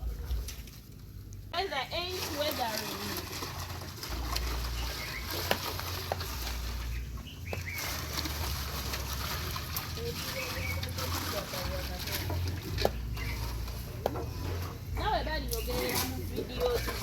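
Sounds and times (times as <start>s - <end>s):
low steady rumble: 0.0s - 17.0s
bird chirps: 6.8s - 7.9s.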